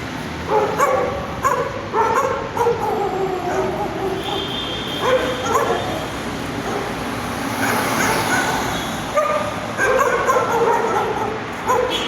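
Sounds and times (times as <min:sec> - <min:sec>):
dog making pitched calls: 0:09.2 - 0:12.0.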